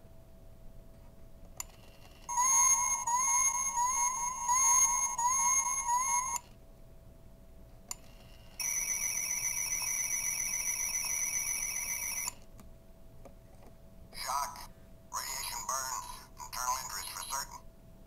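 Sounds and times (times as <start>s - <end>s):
fast-warbling electronic tone: 2.3s - 6.5s
warbling electronic chirp: 2.3s - 6.5s.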